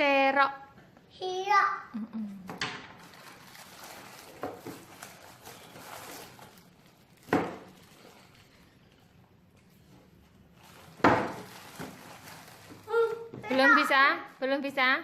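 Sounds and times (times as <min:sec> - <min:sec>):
packaging rustling: 0:02.9 - 0:13.8.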